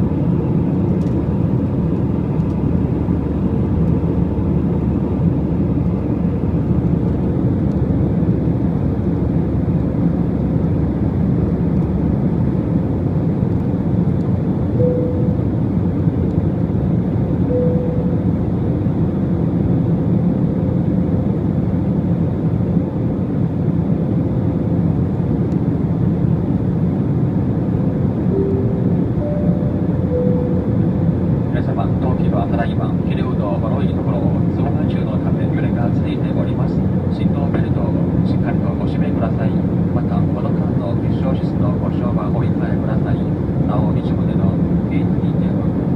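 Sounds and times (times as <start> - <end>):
airliner engines roaring: 0.0 - 45.9
faint steady hum: 14.7 - 16.5, 17.4 - 19.4, 28.1 - 45.9.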